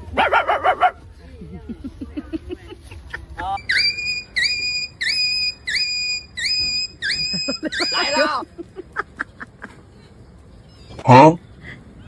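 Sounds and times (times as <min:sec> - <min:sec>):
high rising whistle-like note: 0:03.5 - 0:08.3.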